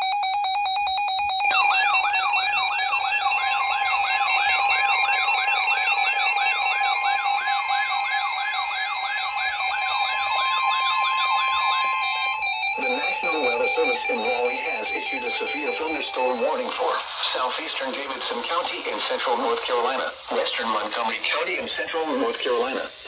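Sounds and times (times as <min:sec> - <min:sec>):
steady warning alarm tone: 0:00.0 - 0:16.9
warbling siren-like alarm: 0:00.0 - 0:16.9
rapidly pulsing electronic beeps: 0:00.0 - 0:19.6.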